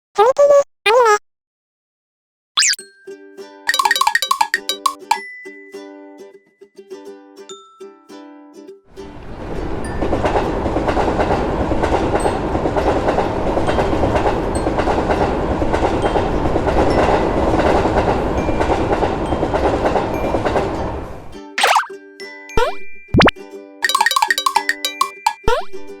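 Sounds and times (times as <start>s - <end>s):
train wheels rumbling on rails: 9.4s - 21.3s.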